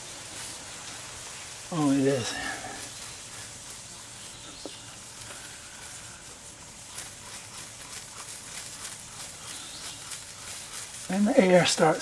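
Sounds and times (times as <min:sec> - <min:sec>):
air hissing from tire: 0:00.0 - 0:07.8.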